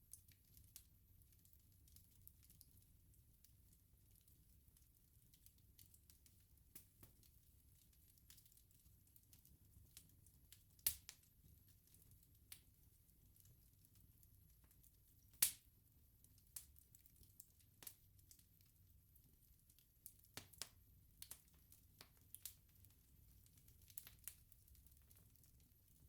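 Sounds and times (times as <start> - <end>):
bonfire crackling and popping: 0.1 - 26.0.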